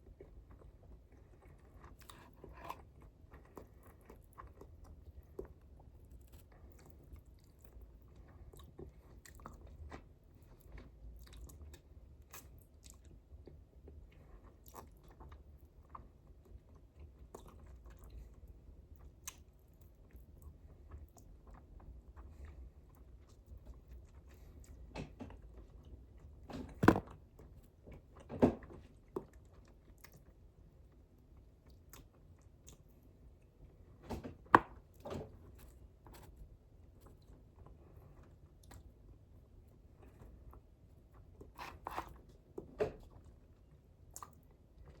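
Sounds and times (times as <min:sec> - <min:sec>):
person chewing food: 0:00.0 - 0:33.8, 0:34.4 - 0:45.0.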